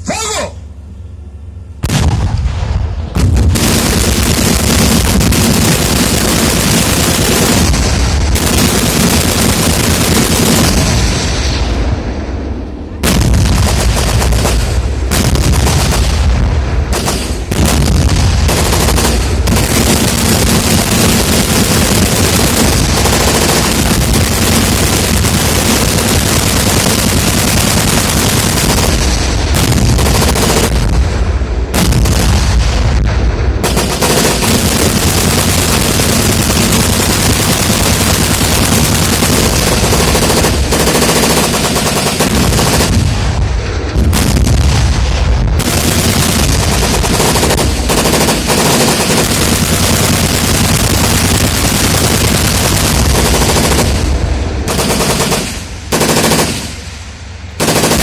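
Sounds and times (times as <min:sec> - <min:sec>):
heavy weapon reports: 0:00.0 - 0:01.7
automatic gunfire: 0:03.2 - 0:11.0, 0:13.0 - 0:31.1, 0:33.6 - 0:43.3, 0:45.6 - 0:56.9, 0:57.6 - 0:58.0.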